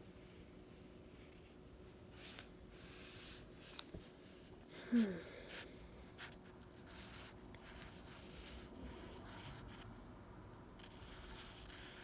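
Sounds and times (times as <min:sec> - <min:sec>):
drawing tool scratching on paper: 0:05.5 - 0:09.9, 0:10.8 - 0:12.0.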